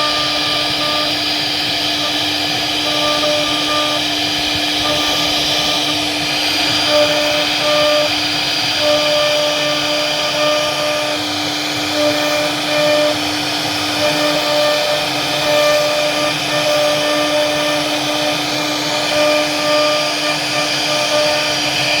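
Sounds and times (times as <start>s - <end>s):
bit cutting wood hiss: 0.0s - 22.0s
high machine tone: 0.0s - 22.0s
router spindle whine: 0.0s - 22.0s.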